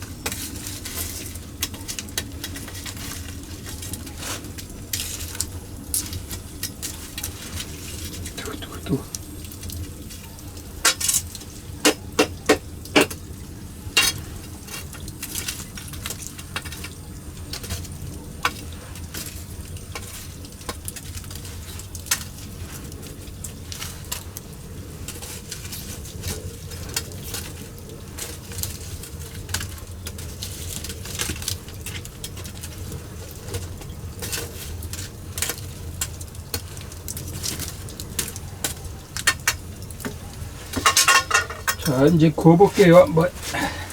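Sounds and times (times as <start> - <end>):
wood fire crackling and popping: 0.0 - 43.9
loud sharp knocks: 11.8 - 13.2.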